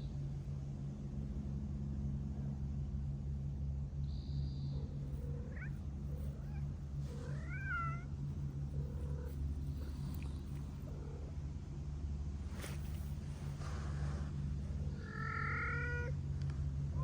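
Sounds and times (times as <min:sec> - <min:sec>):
steady low hum: 0:00.0 - 0:17.0
cat meowing: 0:05.3 - 0:08.1, 0:15.0 - 0:16.2.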